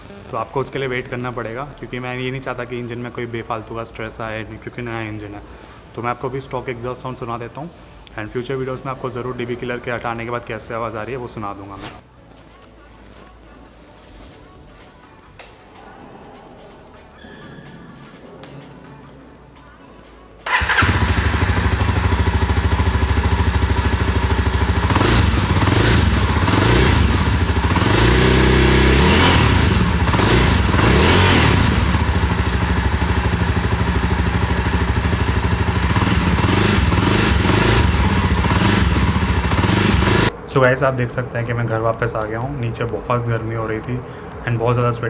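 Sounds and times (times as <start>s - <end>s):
motorcycle engine idling: 20.4s - 40.3s
engine revving: 20.5s - 40.4s.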